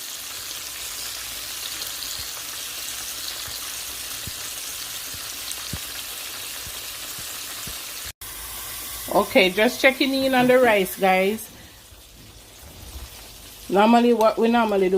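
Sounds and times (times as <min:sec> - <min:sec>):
deep-frying sizzle with crackles: 0:00.0 - 0:14.9.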